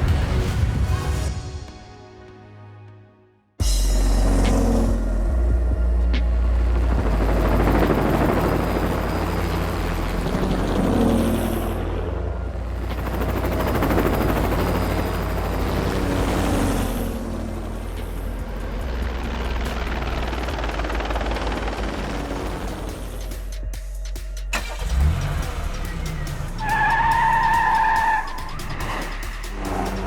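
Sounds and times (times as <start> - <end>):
aircraft engine roar: 3.6 - 23.8
deep rumble: 3.6 - 26.6.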